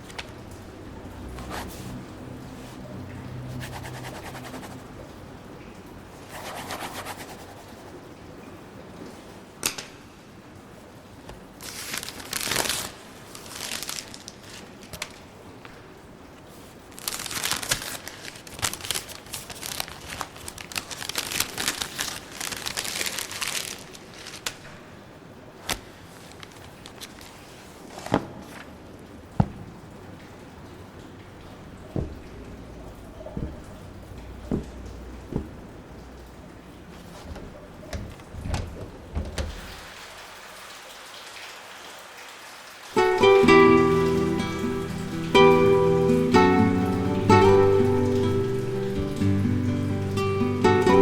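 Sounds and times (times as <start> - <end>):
rustling crinkling noise: 0.0 - 9.4, 10.6 - 40.1.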